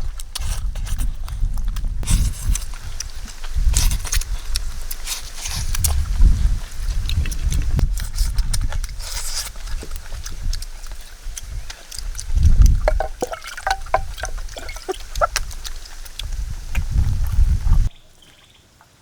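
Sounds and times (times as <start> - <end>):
small clicks and drips: 2.5 - 17.8
water splashing and trickling: 8.6 - 17.9.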